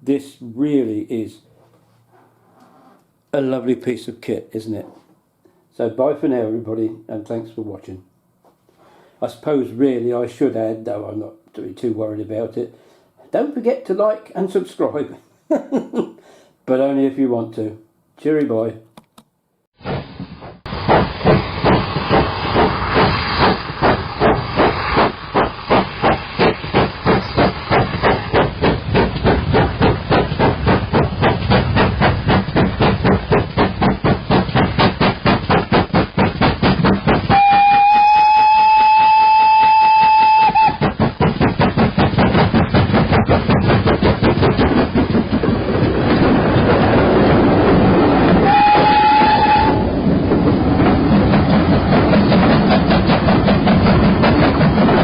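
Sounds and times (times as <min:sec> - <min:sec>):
steam locomotive exhaust beats: 0:19.8 - 0:55.0
steam locomotive whistle: 0:37.3 - 0:40.9, 0:48.4 - 0:50.0.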